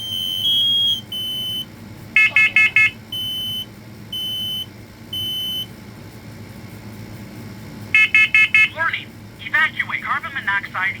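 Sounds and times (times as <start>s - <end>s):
smoke alarm beeping: 0.0s - 5.7s, 8.0s - 8.8s.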